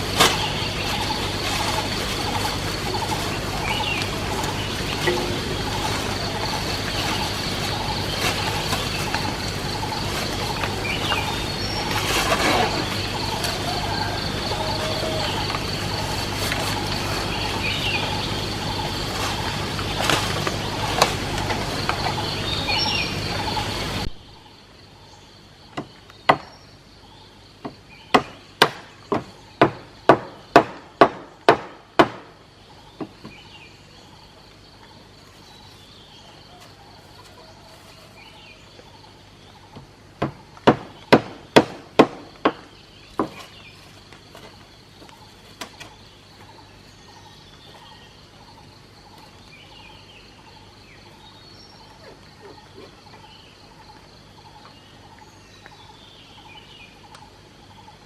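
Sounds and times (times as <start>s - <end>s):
steady noise: 0.0s - 24.5s
faint birdsong: 0.0s - 58.0s.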